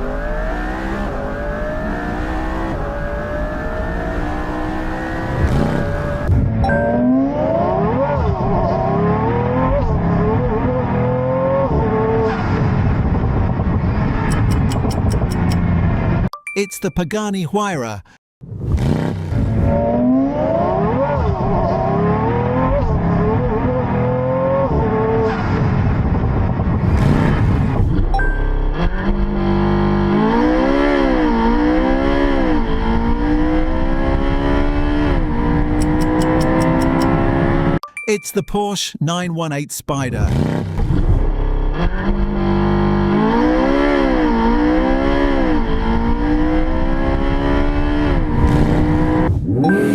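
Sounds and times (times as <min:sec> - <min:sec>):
car engine revving: 0:00.0 - 0:12.6, 0:28.7 - 0:37.8, 0:40.3 - 0:49.9.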